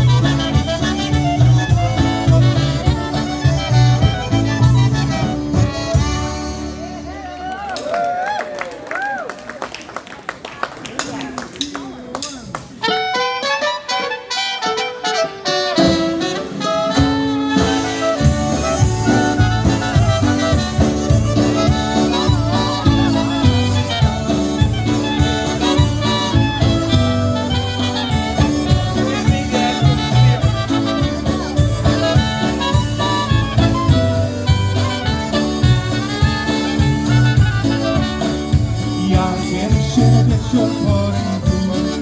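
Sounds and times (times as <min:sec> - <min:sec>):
polka band playing: 0:00.0 - 0:08.2, 0:12.2 - 0:42.0
person singing: 0:21.4 - 0:26.7, 0:27.7 - 0:31.5, 0:38.0 - 0:42.0.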